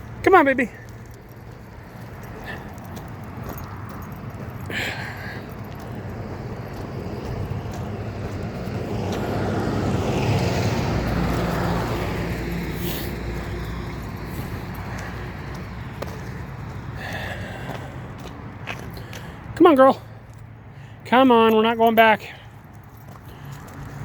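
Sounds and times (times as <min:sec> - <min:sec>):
car passing by: 0:02.4 - 0:19.5.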